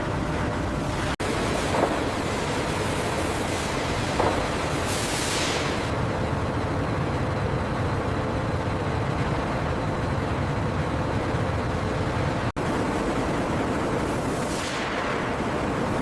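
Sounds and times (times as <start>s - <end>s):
heavy factory machinery rumbling: 0.0s - 16.0s
hiss: 3.1s - 5.9s, 14.4s - 15.2s.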